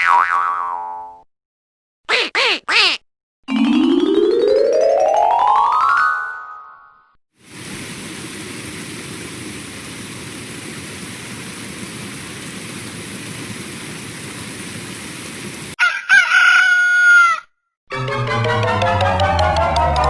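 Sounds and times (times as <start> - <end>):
steady hiss: 7.4 - 15.8.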